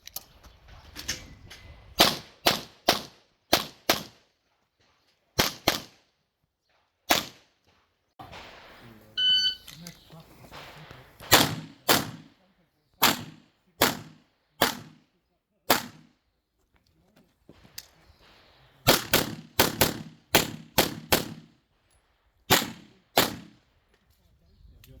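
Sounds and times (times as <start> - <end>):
handgun shots: 7.1 - 7.4, 11.2 - 12.3, 13.0 - 15.0, 15.7 - 16.1.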